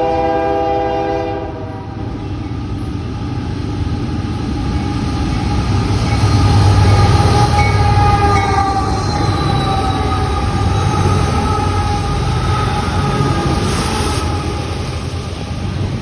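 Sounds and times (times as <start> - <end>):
train horn: 0.0 - 2.2, 6.6 - 14.6
train rumbling past: 0.0 - 16.0.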